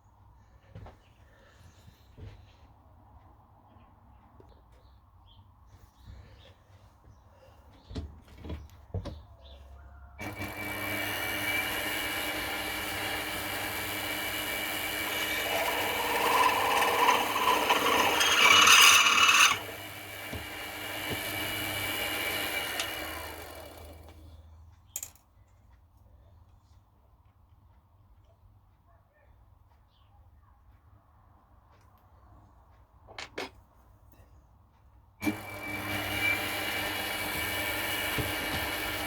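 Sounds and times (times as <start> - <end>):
milling machine whining: 10.2 - 24.2, 35.2 - 39.0.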